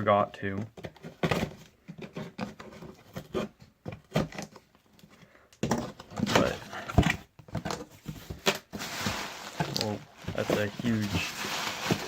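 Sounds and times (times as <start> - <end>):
cardboard package rustling: 5.7 - 12.0.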